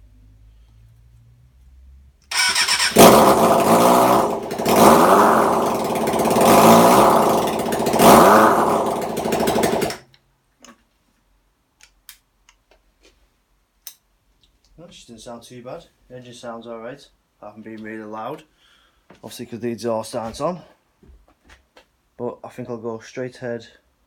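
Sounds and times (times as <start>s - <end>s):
motorcycle engine revving: 2.3s - 10.0s.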